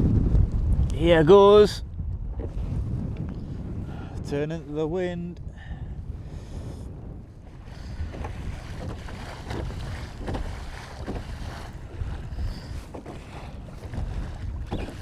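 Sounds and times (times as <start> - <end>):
wind buffeting microphone: 0.0 - 15.0
water splashing against kayak: 6.3 - 15.0.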